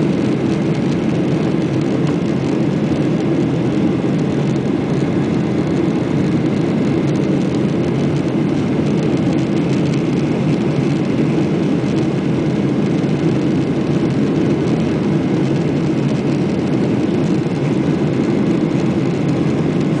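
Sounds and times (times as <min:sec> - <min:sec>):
jet engines rumbling: 0:00.0 - 0:20.0.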